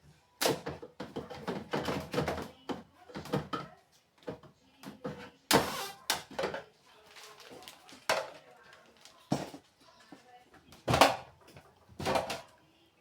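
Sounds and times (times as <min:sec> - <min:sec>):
food containers clattering: 0:00.6 - 0:03.7, 0:10.8 - 0:12.5.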